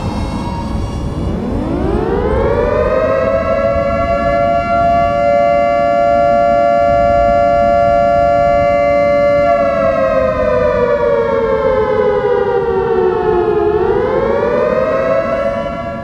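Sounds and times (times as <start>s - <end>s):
low rumble: 0.0s - 5.2s
civil defense siren wailing: 0.0s - 16.0s.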